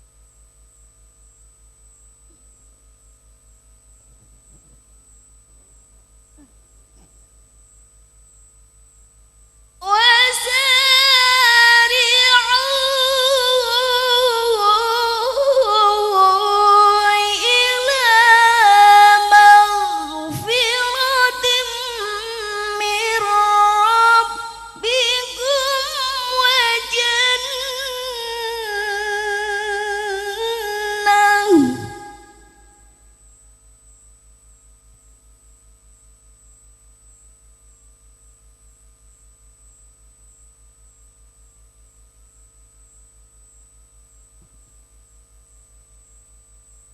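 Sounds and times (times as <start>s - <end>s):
person chanting melodically: 9.8s - 32.8s.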